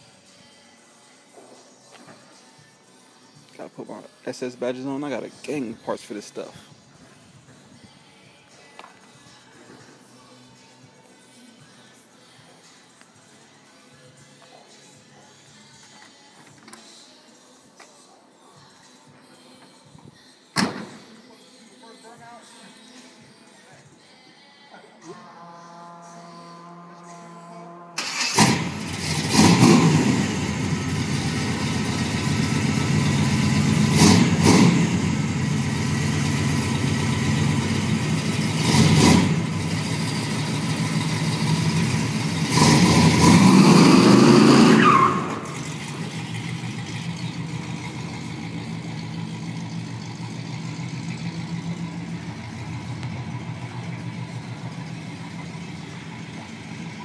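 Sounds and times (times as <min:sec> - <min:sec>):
car engine starting and revving: 0:28.0 - 0:57.0.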